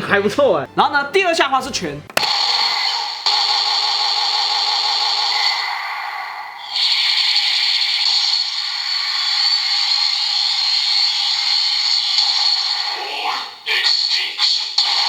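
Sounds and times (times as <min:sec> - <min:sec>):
toy sound effect from small speaker: 0:06.7 - 0:15.0.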